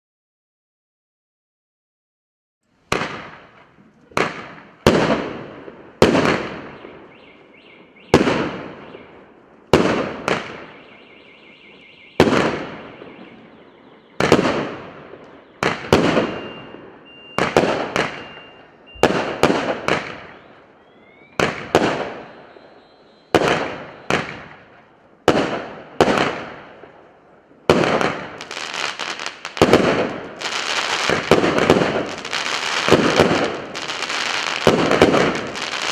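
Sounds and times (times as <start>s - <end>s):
rapid fireworks crackling: 2.8s - 35.9s
firework shots banging: 2.9s - 7.1s, 12.2s - 13.2s, 14.0s - 20.6s, 21.4s - 22.6s, 23.3s - 27.0s, 27.6s - 35.9s.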